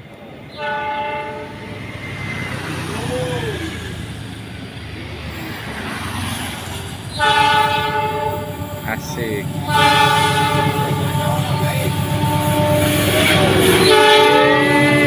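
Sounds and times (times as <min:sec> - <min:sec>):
train running noise: 0:00.0 - 0:15.0
locomotive air horn blast: 0:00.5 - 0:01.8, 0:07.1 - 0:15.0.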